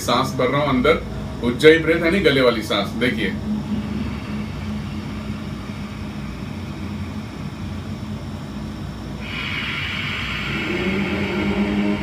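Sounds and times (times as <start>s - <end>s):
steady low hum: 0.0s - 12.0s
slow throat breathing: 3.4s - 12.0s
hissing breath: 9.2s - 12.0s.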